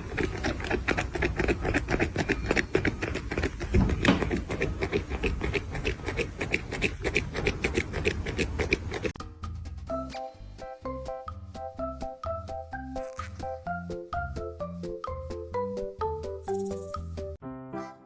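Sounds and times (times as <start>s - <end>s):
fast rhythmic scratching: 0.0s - 9.2s, 12.9s - 13.7s, 16.2s - 17.4s.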